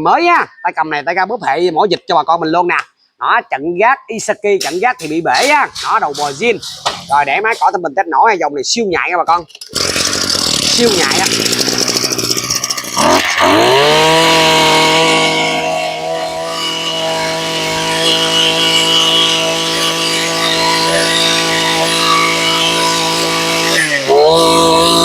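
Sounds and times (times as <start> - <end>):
brush cutter engine running: 9.6 - 25.0.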